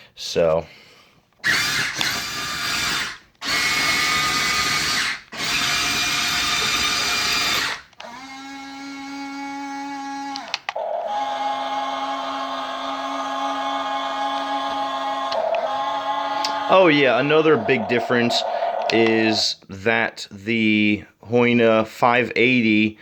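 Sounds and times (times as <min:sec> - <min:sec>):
small electric motors whirring: 0:01.4 - 0:10.4.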